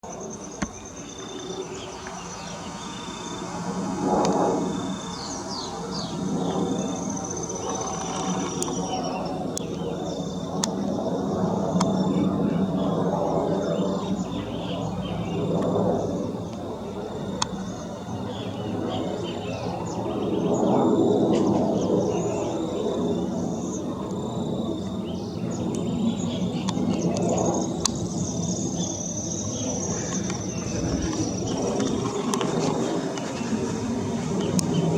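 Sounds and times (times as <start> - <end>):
birds chirping: 0.0 - 11.1, 25.0 - 34.9
high pulsing insect trill: 0.0 - 18.2, 20.6 - 34.9
high jet whine: 0.0 - 34.9
jet engines rumbling overhead: 0.0 - 34.9.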